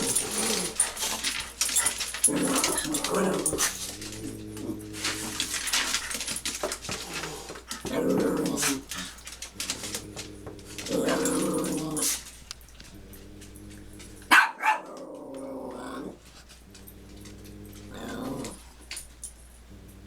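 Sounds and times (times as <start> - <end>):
dog growling: 0.0 - 18.9, 19.5 - 20.0
dog yapping: 14.3 - 14.9.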